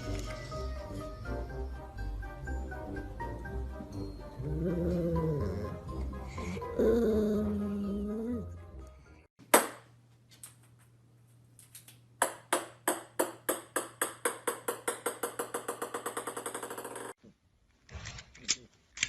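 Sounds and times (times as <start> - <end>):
small hard ball bouncing: 12.2 - 17.1.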